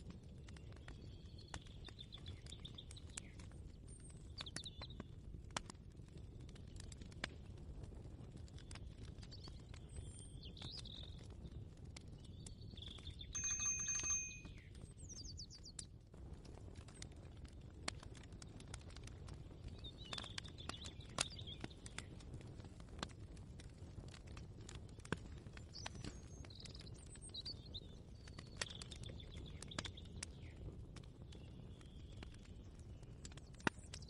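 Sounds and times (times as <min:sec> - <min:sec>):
small birds chirping: 0:00.0 - 0:05.3, 0:08.4 - 0:15.9, 0:19.2 - 0:22.3, 0:24.8 - 0:34.0
brief ringing sound: 0:13.4 - 0:14.5.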